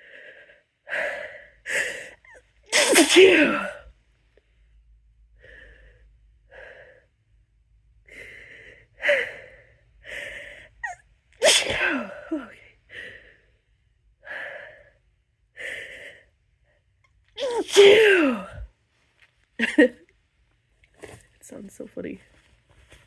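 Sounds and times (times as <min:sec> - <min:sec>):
person stifling sneezes: 0:02.3 - 0:03.8, 0:10.8 - 0:12.5, 0:17.4 - 0:18.6.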